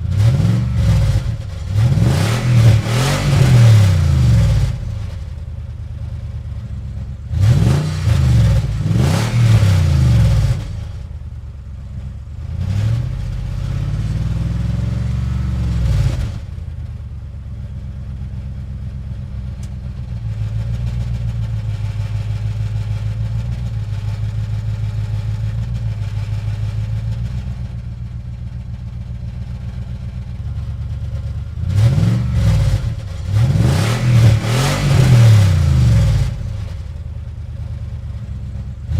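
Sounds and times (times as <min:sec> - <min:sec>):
car engine accelerating through gears: 0:00.0 - 0:05.2, 0:07.3 - 0:11.0, 0:31.6 - 0:36.8.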